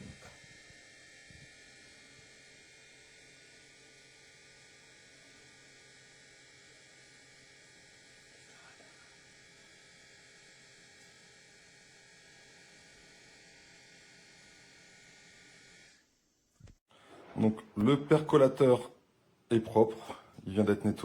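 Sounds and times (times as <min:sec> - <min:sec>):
faint hum and hiss: 0:15.9 - 0:21.0.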